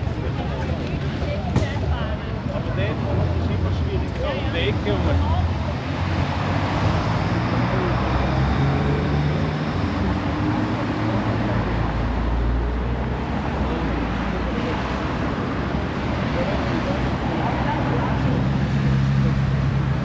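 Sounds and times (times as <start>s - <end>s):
road traffic passing: 0.0s - 20.0s.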